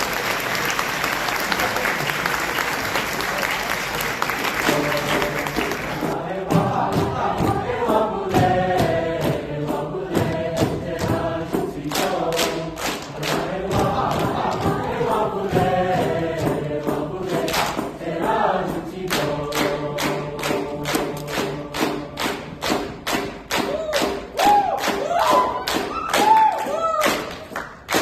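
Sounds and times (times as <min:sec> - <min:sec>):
musical accompaniment: 0:00.0 - 0:28.0
percussive beat: 0:03.8 - 0:28.0
choir singing: 0:04.1 - 0:22.8.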